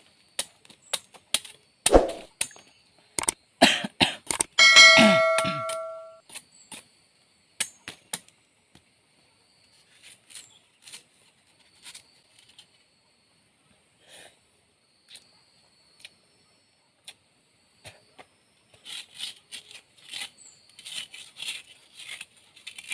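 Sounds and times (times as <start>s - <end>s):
ringing metallic clang: 4.6s - 6.2s.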